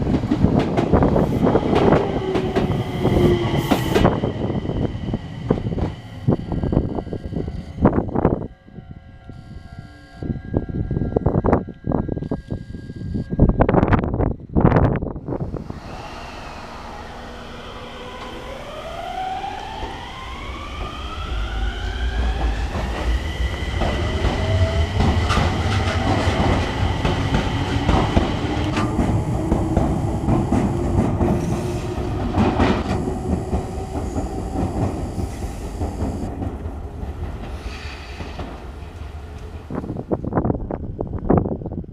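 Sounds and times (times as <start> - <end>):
electric train motors whining: 15.3 - 40.6
wheels clattering on rail joints: 22.3 - 40.2.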